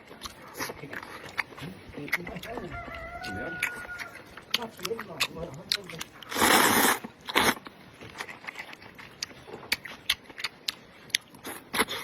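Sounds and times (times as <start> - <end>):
wet chewing: 0.0 - 12.0
person slurping soup: 6.2 - 7.6.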